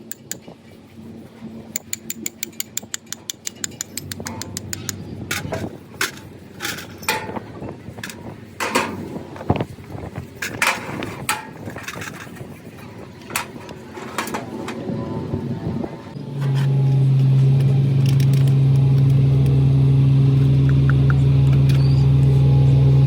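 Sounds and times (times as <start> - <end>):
low background hum: 0.4 - 23.0
metal tools clinking: 3.7 - 7.4.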